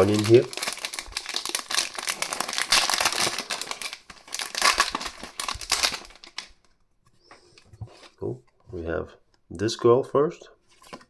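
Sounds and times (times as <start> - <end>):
wrapper crinkling and tearing: 0.0 - 6.6.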